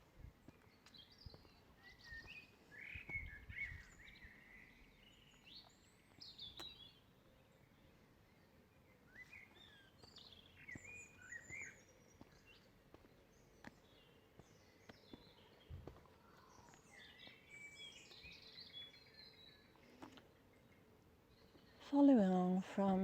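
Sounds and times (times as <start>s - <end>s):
songbirds chirping and whistling: 0.4s - 22.6s.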